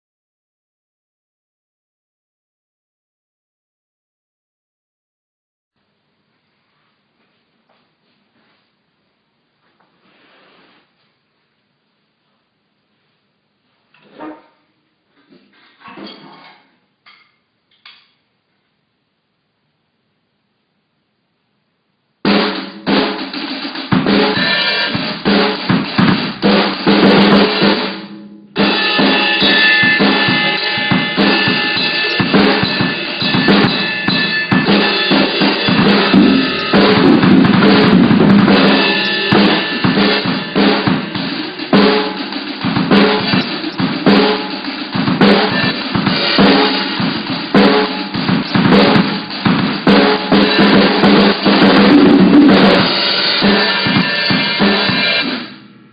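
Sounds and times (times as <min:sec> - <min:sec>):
drum kit playing: 0:22.2 - 0:55.9.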